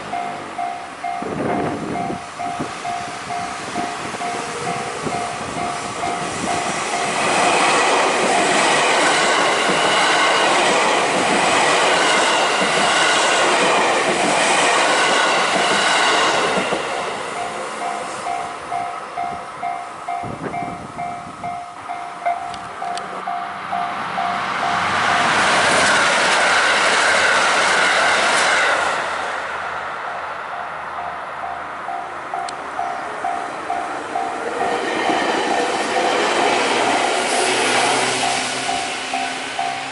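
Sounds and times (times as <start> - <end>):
train passing at speed: 0.0 - 39.9.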